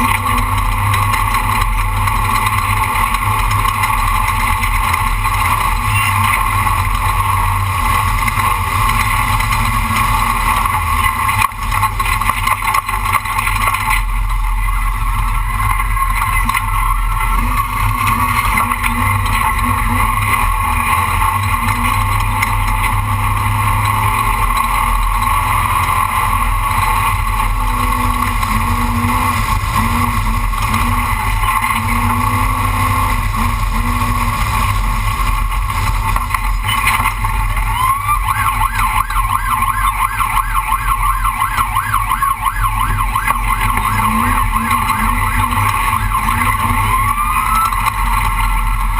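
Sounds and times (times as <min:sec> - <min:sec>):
truck engine and road drone: 0:00.0 - 0:48.9.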